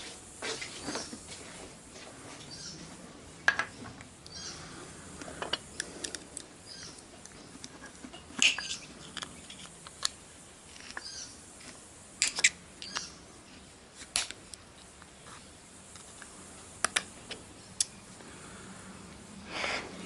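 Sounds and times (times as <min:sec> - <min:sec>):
small metal clicks and scrapes: 0:05.2 - 0:13.1.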